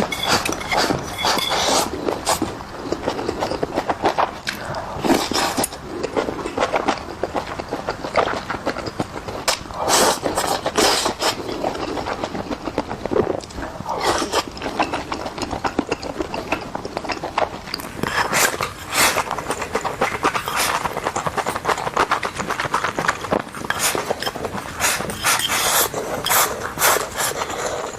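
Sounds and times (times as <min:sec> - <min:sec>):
mouth chewing meat: 0:00.0 - 0:27.9.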